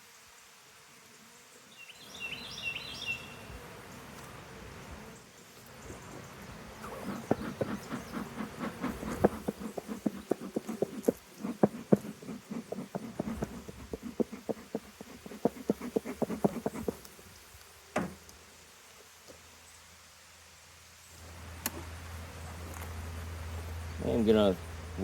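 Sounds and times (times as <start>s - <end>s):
wooden hive parts knocking: 6.9s - 17.1s.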